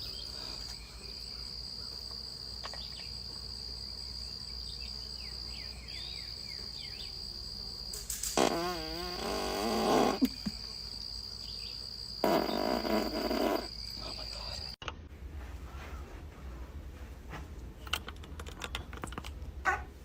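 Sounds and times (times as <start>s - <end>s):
insects trilling: 0.0s - 14.8s
loud wavering fart: 8.4s - 10.5s, 12.2s - 13.7s.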